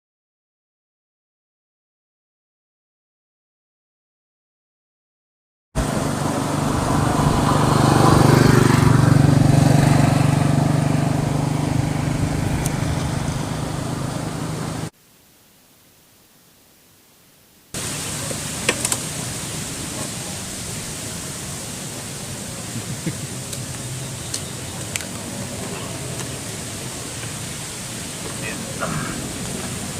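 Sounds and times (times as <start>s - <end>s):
scooter engine running: 5.8s - 14.9s.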